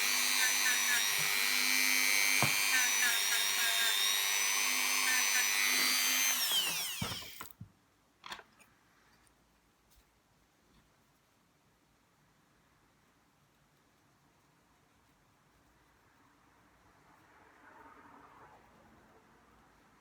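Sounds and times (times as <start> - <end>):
rotary tool whining: 0.0 - 7.5.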